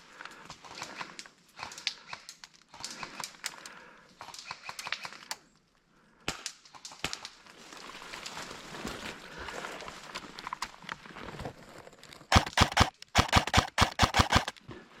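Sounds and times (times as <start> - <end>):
sharp cracks: 12.3 - 14.6.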